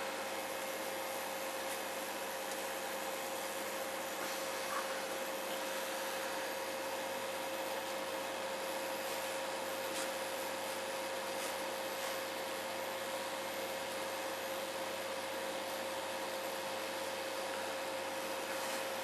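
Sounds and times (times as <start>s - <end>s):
faint steady whine: 0.0s - 19.0s
hot air blower hissing: 2.8s - 15.6s.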